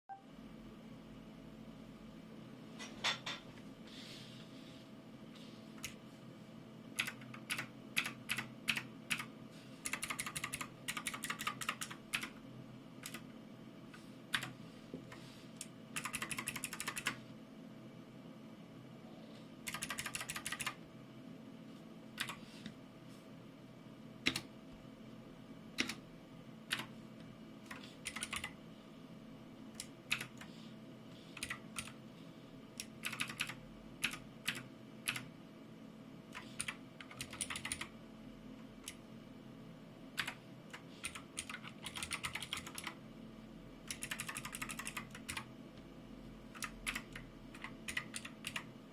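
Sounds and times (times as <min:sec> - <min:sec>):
clicky mechanical keyboard typing: 0:07.0 - 0:12.4, 0:13.0 - 0:13.3, 0:14.3 - 0:14.6, 0:15.6 - 0:17.2, 0:19.6 - 0:20.8, 0:22.2 - 0:22.4, 0:24.2 - 0:24.5, 0:25.8 - 0:26.0, 0:26.7 - 0:26.9, 0:27.7 - 0:28.6, 0:29.8 - 0:30.5, 0:31.4 - 0:32.0, 0:32.8 - 0:35.3, 0:36.3 - 0:37.9, 0:40.2 - 0:43.0, 0:43.9 - 0:45.5, 0:46.5 - 0:48.7.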